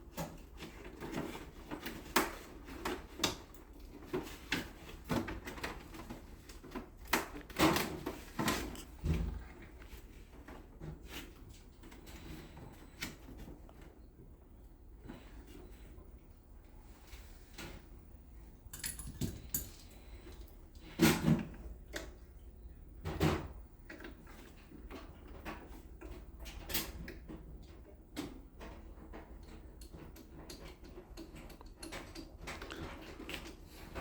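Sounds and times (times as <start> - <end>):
hard objects clicking and knocking: 18.7 - 19.9.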